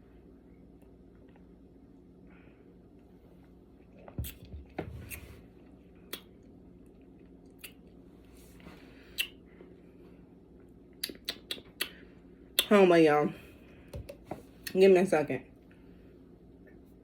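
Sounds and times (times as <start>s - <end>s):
lip and tongue clicks: 6.1s - 6.3s, 7.5s - 7.9s, 9.2s - 9.4s, 11.0s - 12.0s.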